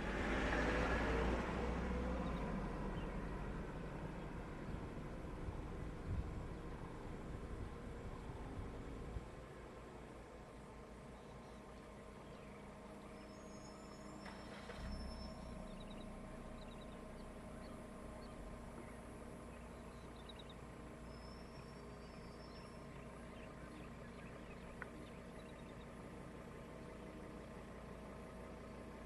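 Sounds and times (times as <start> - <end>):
vehicle engine idling: 0.0 - 29.0
bird chirps: 11.1 - 29.0.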